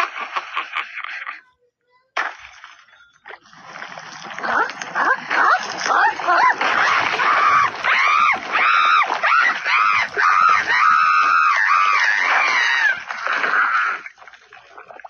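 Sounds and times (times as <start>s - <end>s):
squeaky voice squealing: 4.5s - 14.1s.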